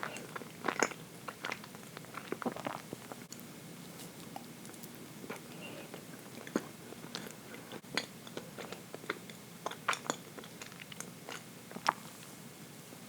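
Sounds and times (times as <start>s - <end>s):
person chewing cake: 0.0s - 12.3s.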